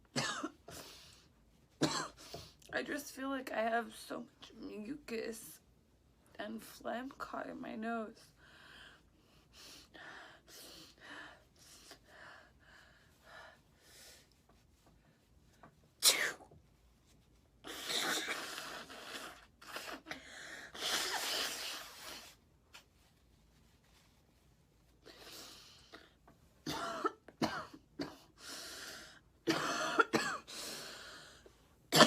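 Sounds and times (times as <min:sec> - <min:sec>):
woman sniffing congested nose: 0:20.7 - 0:22.4.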